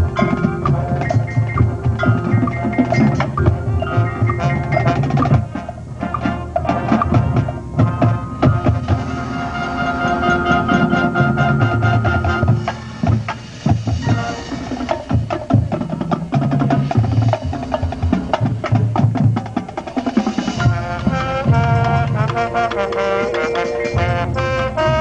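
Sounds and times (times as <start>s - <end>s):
drum-line playing: 0.0s - 25.0s
brass section held chords: 2.2s - 13.1s, 14.0s - 14.8s, 20.5s - 25.0s.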